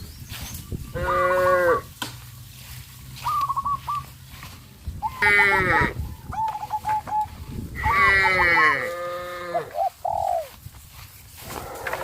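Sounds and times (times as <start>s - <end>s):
livestock bleating: 0.9s - 1.9s, 5.2s - 6.0s, 7.8s - 9.7s.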